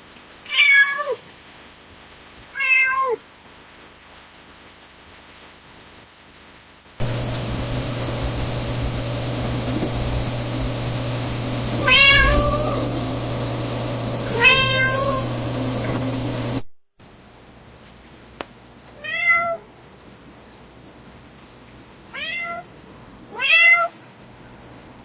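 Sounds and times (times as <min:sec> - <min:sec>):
cat meowing softly: 0:00.4 - 0:01.2, 0:02.5 - 0:03.2, 0:11.8 - 0:12.9, 0:14.3 - 0:15.2, 0:19.0 - 0:19.7, 0:22.1 - 0:22.7, 0:23.3 - 0:24.0
steady low hum: 0:07.0 - 0:17.6.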